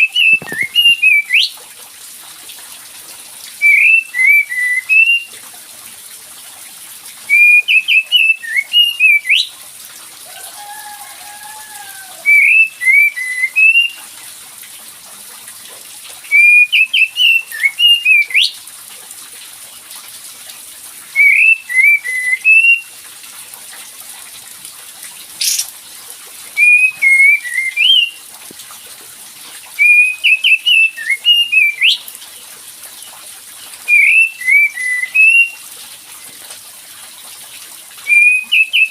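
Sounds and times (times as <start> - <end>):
songbird chattering song: 25.4 - 25.7, 26.6 - 28.2.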